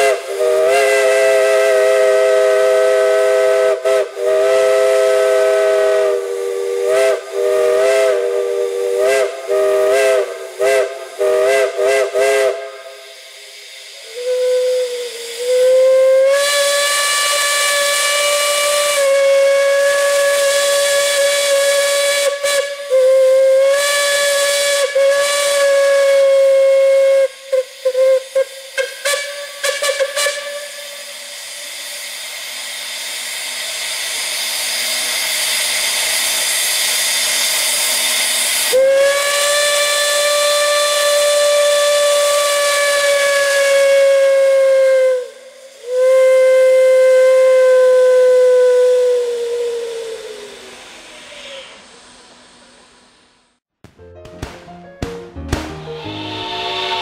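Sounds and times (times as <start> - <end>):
steam whistle blowing: 0.0 - 53.3, 55.9 - 57.0
steam hissing: 0.0 - 53.6, 55.8 - 57.0.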